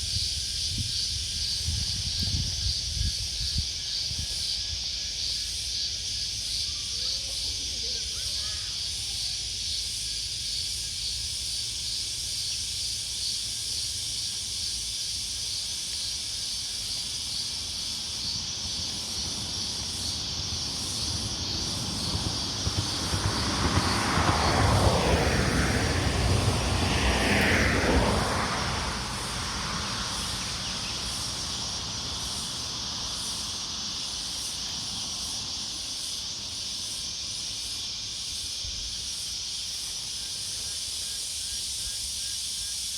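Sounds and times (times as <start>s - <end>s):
insect chorus buzzing: 0.0s - 42.9s
road vehicle passing: 17.1s - 38.0s.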